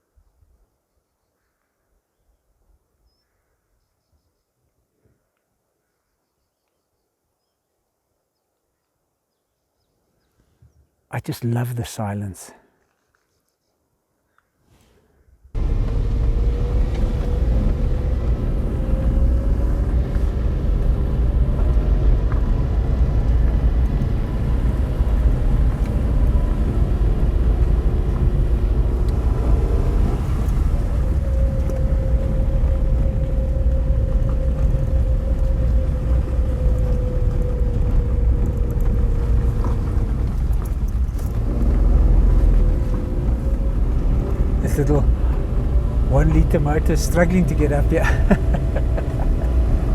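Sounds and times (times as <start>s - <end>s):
heavy low rumble: 15.6s - 49.9s
small car engine labouring: 15.6s - 49.9s.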